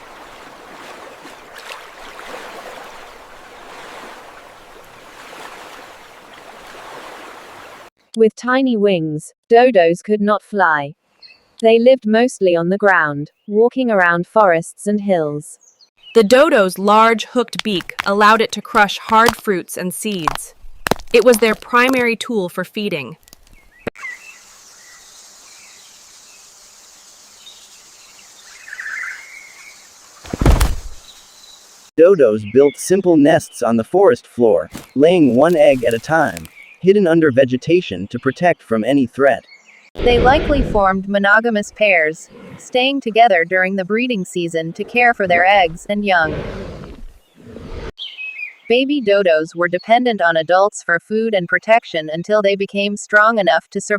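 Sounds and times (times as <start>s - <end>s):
flowing water: 0.0s - 7.9s, 34.8s - 36.5s
bird chirps: 23.6s - 30.3s, 47.2s - 49.0s
steady high insect hiss: 24.0s - 31.9s.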